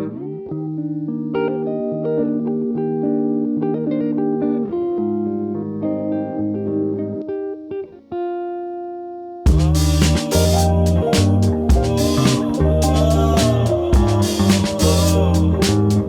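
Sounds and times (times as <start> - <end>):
plucked guitar melody: 0.0 - 8.7
held bass notes: 9.5 - 16.0.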